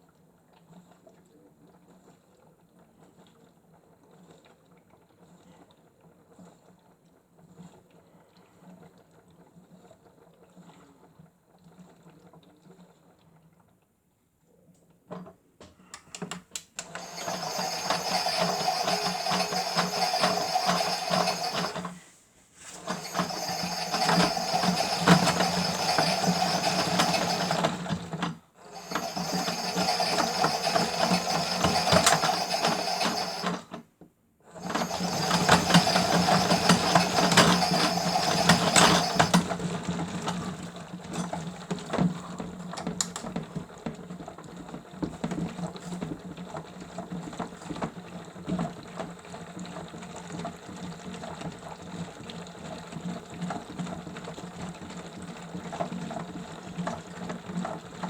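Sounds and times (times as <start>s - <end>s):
small motor whirring: 16.8s - 22.1s, 22.7s - 33.8s, 34.6s - 40.4s.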